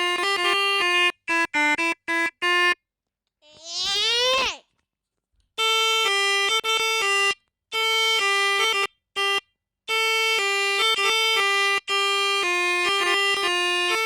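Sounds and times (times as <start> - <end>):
melodica playing a tune: 0.0 - 2.8, 5.6 - 14.0.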